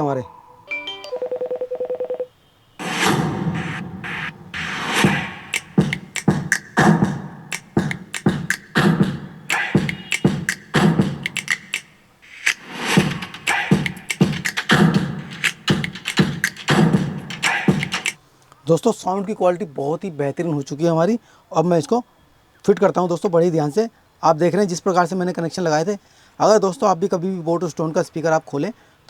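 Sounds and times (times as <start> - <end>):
song with vocals and strong beat: 2.8 - 18.2.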